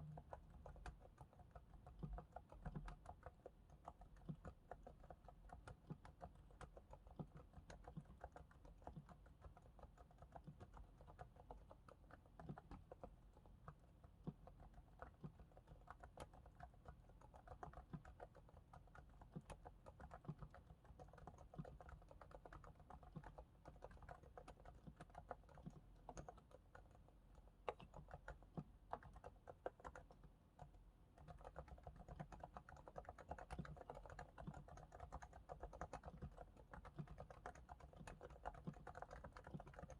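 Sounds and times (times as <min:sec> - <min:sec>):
muffled keyboard typing: 0:00.0 - 0:39.9.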